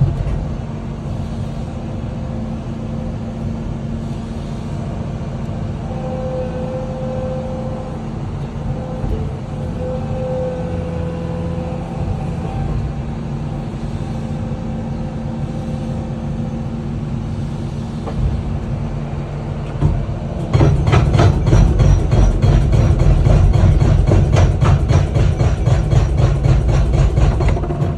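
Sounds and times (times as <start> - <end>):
hydraulic breaker hammering: 19.7 - 27.9.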